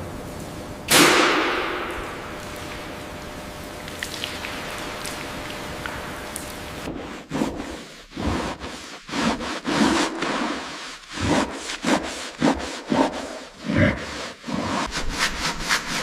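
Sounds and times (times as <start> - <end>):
rough scraping strokes: 6.9 - 16.0.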